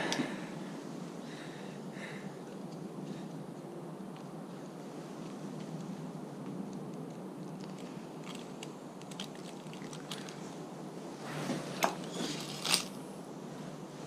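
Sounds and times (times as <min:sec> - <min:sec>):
cable housing rustling scrape: 0:11.2 - 0:13.0.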